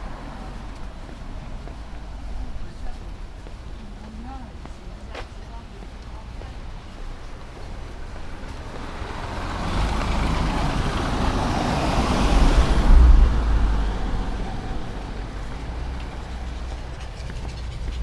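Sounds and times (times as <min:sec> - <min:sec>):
vehicle passing by: 0:08.4 - 0:18.0.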